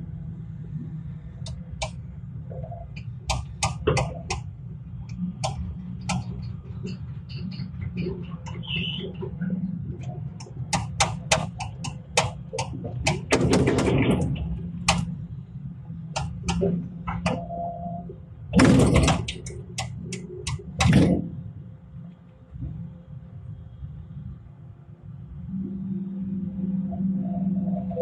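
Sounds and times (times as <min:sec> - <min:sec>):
excavator engine running: 0:00.0 - 0:28.0
sharp knocks and clanks: 0:02.9 - 0:04.5, 0:05.4 - 0:15.1, 0:18.5 - 0:21.4.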